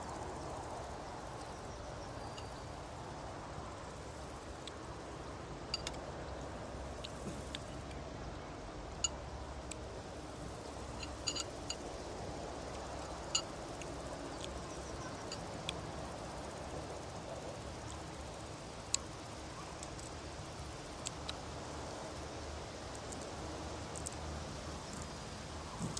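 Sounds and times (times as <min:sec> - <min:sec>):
background hiss and hum: 0:00.0 - 0:25.9
tableware clinking: 0:11.0 - 0:11.8.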